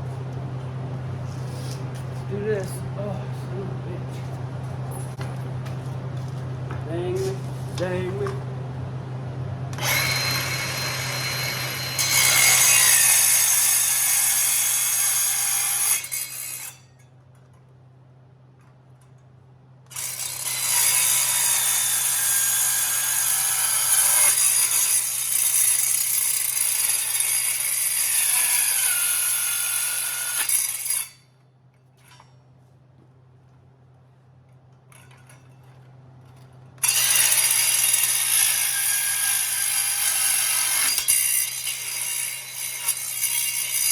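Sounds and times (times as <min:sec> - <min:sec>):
angle grinder cutting steel: 0:09.8 - 0:16.8, 0:19.9 - 0:31.2, 0:36.8 - 0:43.9.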